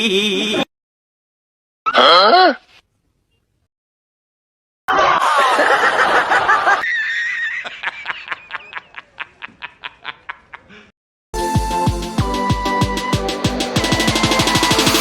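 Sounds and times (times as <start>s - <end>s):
electronic music with beat: 11.4s - 15.0s.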